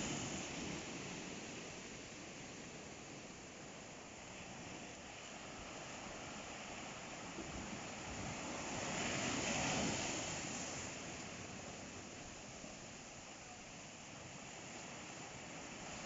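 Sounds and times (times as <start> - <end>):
ocean waves breaking: 0.0 - 13.2
steady hiss of the sea: 0.0 - 16.0.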